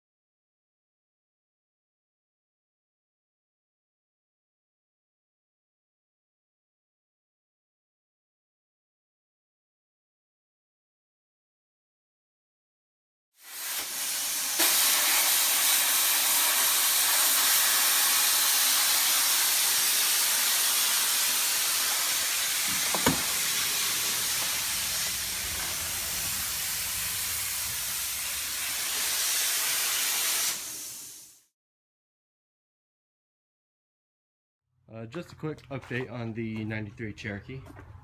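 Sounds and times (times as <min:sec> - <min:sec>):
plasma cutter hissing: 0:13.4 - 0:31.4
short knock: 0:22.7 - 0:23.8.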